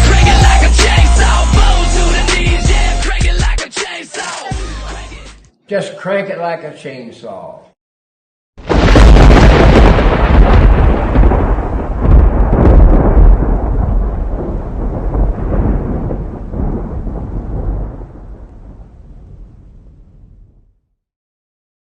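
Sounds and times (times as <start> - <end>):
deep rumbling boom: 8.6 - 20.8.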